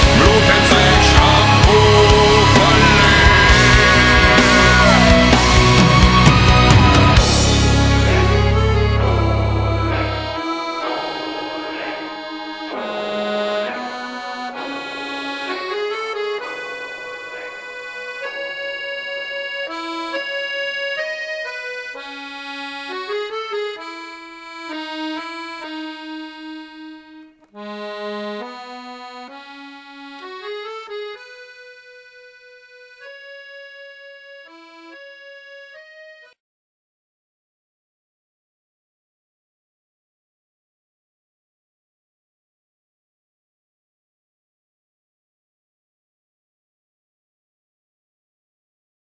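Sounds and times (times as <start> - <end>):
background music with held notes: 0.0 - 36.4.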